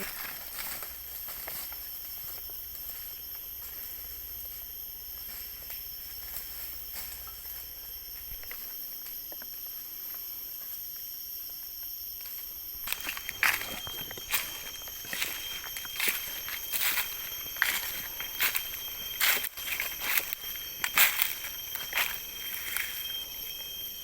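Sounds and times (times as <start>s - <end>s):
footsteps on leaf litter: 0.0s - 4.3s, 12.8s - 23.6s
forest insects droning: 0.0s - 24.0s.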